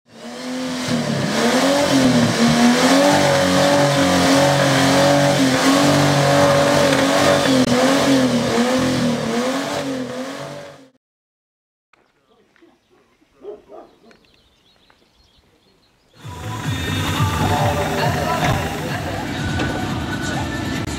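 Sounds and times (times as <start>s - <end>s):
off-road engine revving: 0.1s - 11.0s, 16.2s - 20.9s.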